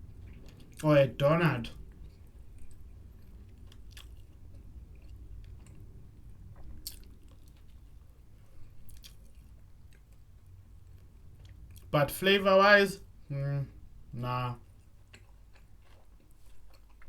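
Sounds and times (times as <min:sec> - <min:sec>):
person chewing food: 0:00.2 - 0:00.8, 0:01.8 - 0:11.9, 0:14.6 - 0:17.0.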